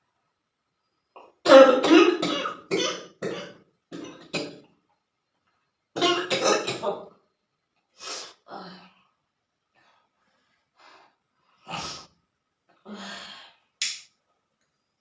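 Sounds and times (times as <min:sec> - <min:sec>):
person sniffing and sneezing: 0:08.0 - 0:08.4, 0:11.6 - 0:12.1.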